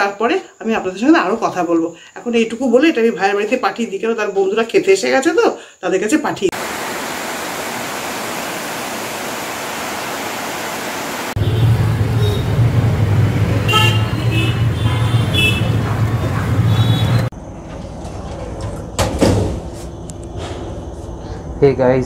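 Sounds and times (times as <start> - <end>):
steady hiss: 6.5 - 11.4
road traffic engine rumble: 11.3 - 22.0.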